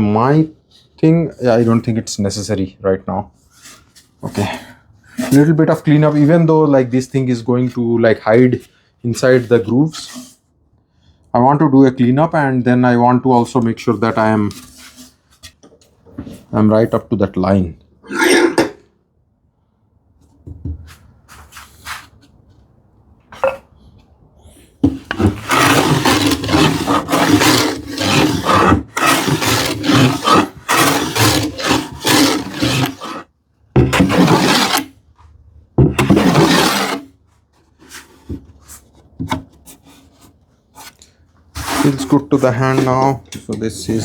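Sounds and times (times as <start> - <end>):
hand tool scraping plywood edge: 24.8 - 34.9, 36.0 - 43.2.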